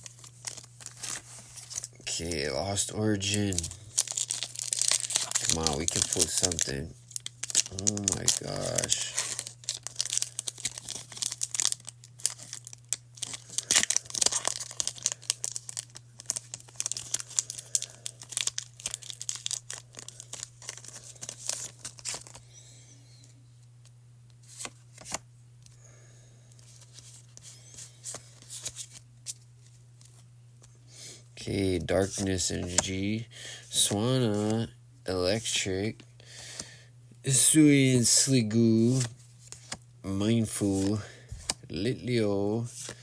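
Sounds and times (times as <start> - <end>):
cards clicking and rustling: 0.0 - 2.4, 3.1 - 22.4, 32.0 - 33.0, 38.5 - 39.8, 40.4 - 41.6
foil wrapper tearing and crinkling: 0.0 - 22.4.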